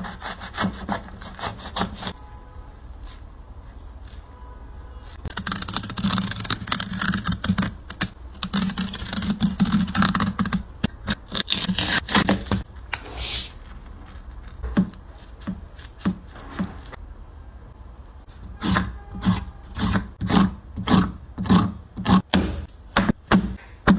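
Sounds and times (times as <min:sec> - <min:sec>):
scraping and tearing materials: 0:00.0 - 0:17.0.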